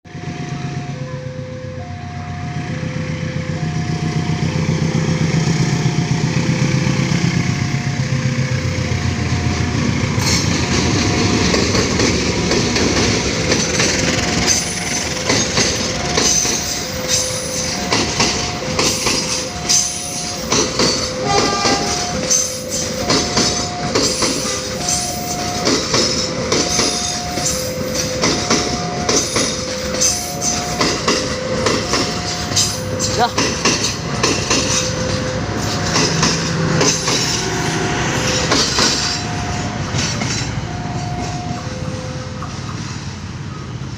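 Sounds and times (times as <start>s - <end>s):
diesel locomotive running hard: 0.1s - 43.9s
train wheels clattering over rail joints: 8.2s - 41.6s
two-tone electronic warning beeps: 14.2s - 36.4s, 37.0s - 42.6s.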